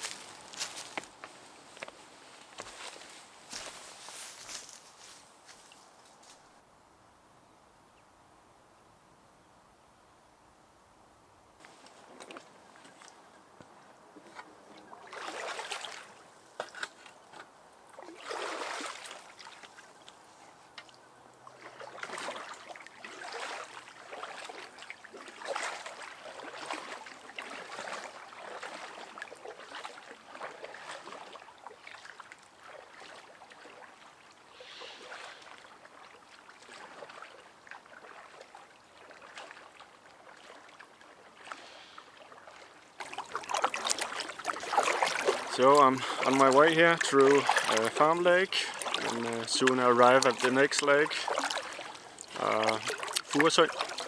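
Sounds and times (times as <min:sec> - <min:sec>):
paddle strokes in water: 0:00.0 - 0:06.5, 0:11.6 - 0:54.0
water trickling off paddle: 0:11.6 - 0:54.0.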